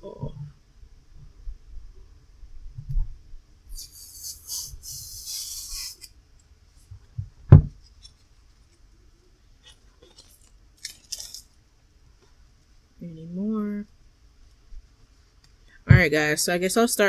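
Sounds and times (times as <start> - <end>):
loud thump: 7.2 - 7.8
plastic film peeling and crinkling: 9.7 - 11.6.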